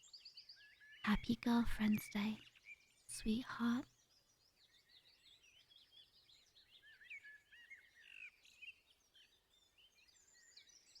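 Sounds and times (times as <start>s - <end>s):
small birds chirping: 0.0s - 11.0s
soft outdoor hiss: 1.1s - 4.6s.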